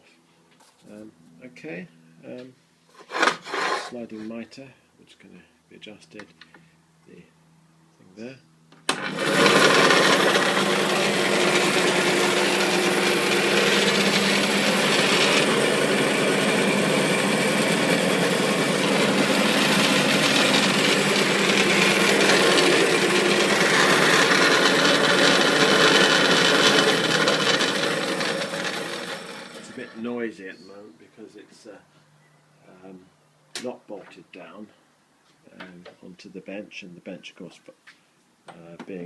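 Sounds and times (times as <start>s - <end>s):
bandsaw motor humming: 8.9s - 30.2s.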